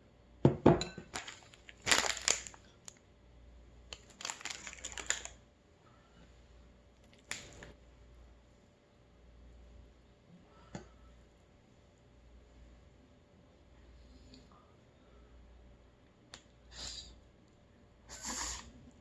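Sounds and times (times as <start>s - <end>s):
slurping and chewing noodles: 18.1s - 19.0s.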